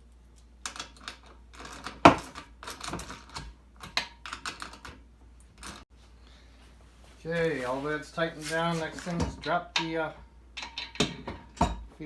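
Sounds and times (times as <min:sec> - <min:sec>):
metal clicks and rattles: 0:00.3 - 0:05.8, 0:10.6 - 0:11.7.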